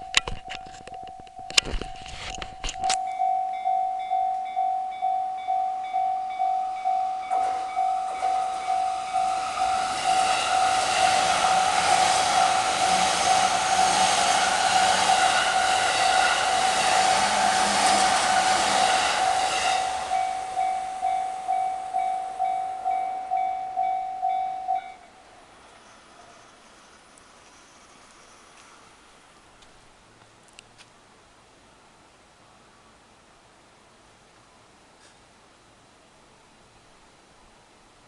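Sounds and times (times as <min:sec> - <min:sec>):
level crossing warning bell ringing: 0:02.7 - 0:13.9, 0:18.3 - 0:25.2
train passing: 0:03.1 - 0:29.5.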